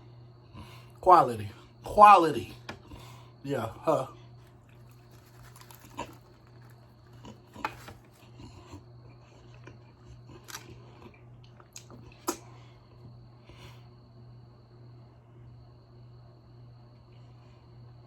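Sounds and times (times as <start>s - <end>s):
steady low hum: 0.0s - 18.0s
crunchy chewing: 4.2s - 13.6s.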